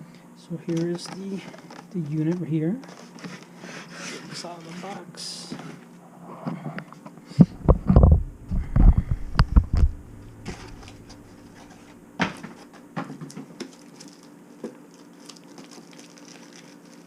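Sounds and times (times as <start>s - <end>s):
bumps and knocks of handling: 7.4s - 13.6s.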